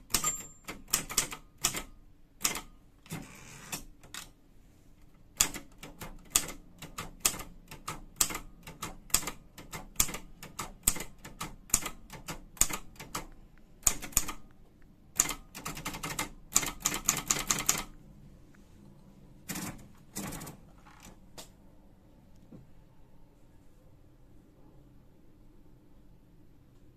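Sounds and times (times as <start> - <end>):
manual typewriter key strikes: 0.0 - 4.3, 5.4 - 14.4, 15.2 - 17.9.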